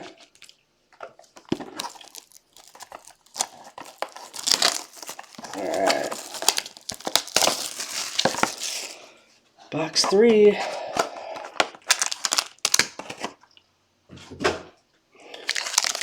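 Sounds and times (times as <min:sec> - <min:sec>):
plastic wrapping crinkling and tearing: 0:00.1 - 0:09.1, 0:10.1 - 0:13.4, 0:15.4 - 0:16.0
packaging clicks: 0:01.2 - 0:09.0, 0:11.0 - 0:13.3, 0:15.4 - 0:16.0.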